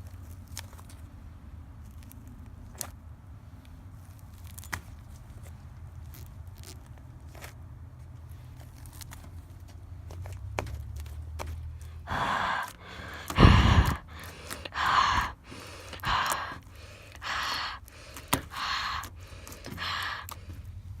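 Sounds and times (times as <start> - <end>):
person breathing heavily: 11.8 - 20.8.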